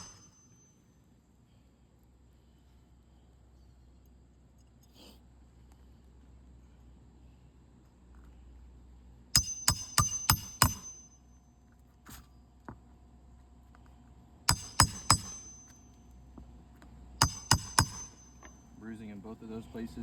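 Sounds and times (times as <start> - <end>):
hammer blows on metal: 0.0 - 0.6, 9.4 - 11.3, 14.5 - 15.9, 17.2 - 18.8.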